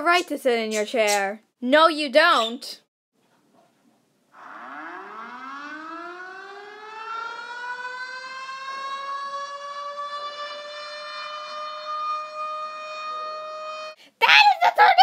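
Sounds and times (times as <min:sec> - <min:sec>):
warning siren wailing: 0:04.4 - 0:14.0.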